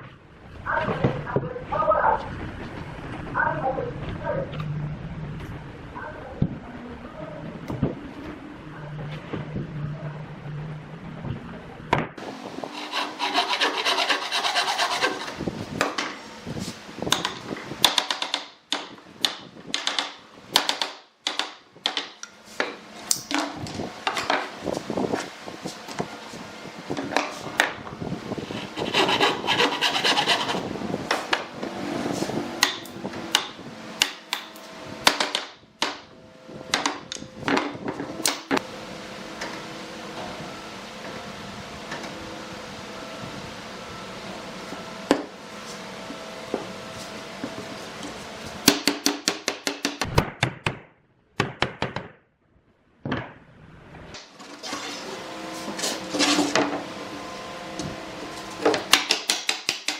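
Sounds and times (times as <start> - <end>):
hand tool scraping wood: 12.6 - 15.4, 28.4 - 30.6
sharp strikes on wood: 58.9 - 59.9.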